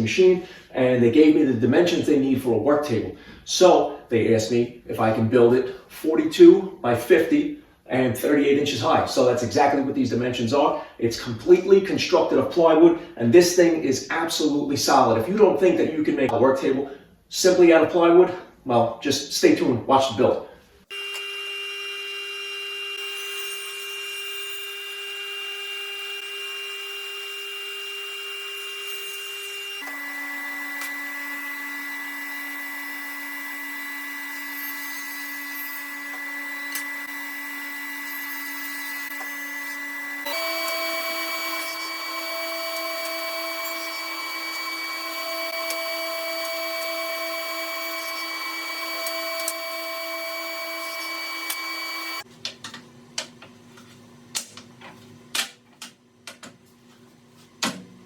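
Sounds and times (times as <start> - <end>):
power saw whining: 20.9 - 52.3.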